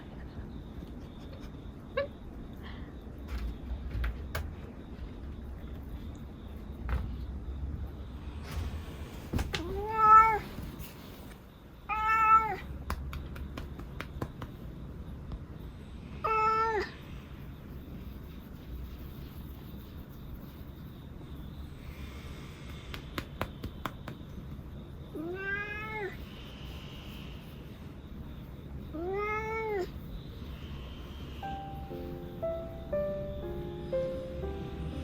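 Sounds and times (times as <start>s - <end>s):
cat meowing: 9.6s - 10.5s, 11.9s - 12.7s, 25.1s - 26.2s, 28.9s - 30.0s.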